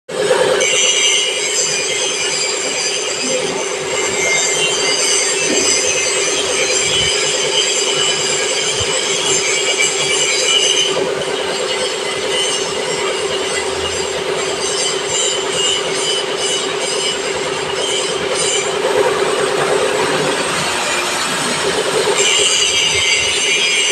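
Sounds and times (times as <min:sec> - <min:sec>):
high-pitched cutter squeal: 0:00.1 - 0:23.9
milling machine running: 0:00.1 - 0:23.9.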